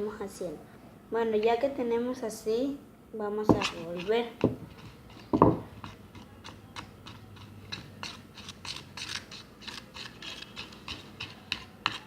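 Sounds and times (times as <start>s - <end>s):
slime being stirred: 3.4s - 12.0s.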